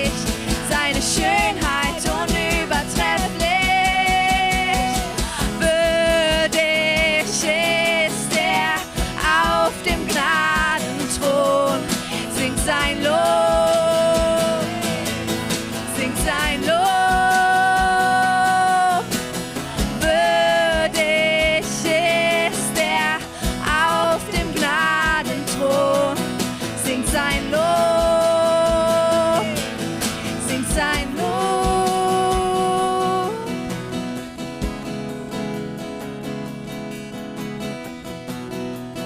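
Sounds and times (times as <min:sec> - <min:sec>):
guitar and band accompaniment: 0:00.0 - 0:39.0
person singing long notes: 0:00.8 - 0:15.2, 0:16.0 - 0:19.1, 0:30.4 - 0:33.6.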